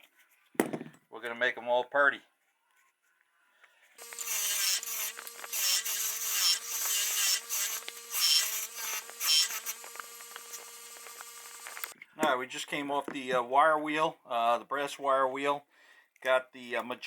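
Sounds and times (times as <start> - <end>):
wire wheel motor humming: 4.0 - 11.9
wire wheel scouring metal: 4.0 - 11.9.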